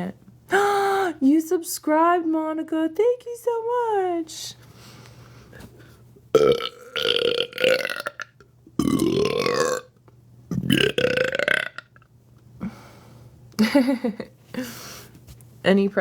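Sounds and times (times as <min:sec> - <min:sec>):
woman belching: 0:06.4 - 0:09.9, 0:10.5 - 0:12.0.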